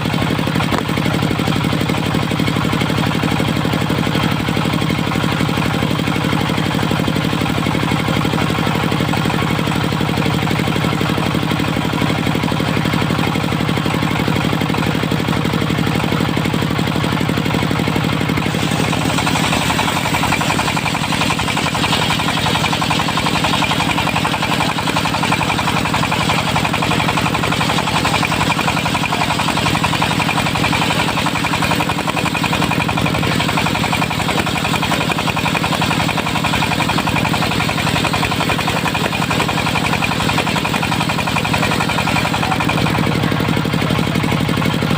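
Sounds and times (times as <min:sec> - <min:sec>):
diesel engine running: 0:00.0 - 0:44.9
harsh high-pitched saw noise: 0:18.3 - 0:31.4.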